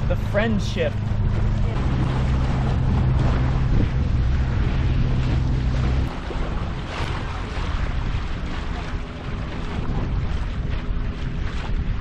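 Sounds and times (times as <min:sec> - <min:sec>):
boat engine drone: 0:00.0 - 0:12.0
water washing: 0:00.0 - 0:12.0
wind buffeting microphone: 0:00.0 - 0:12.0.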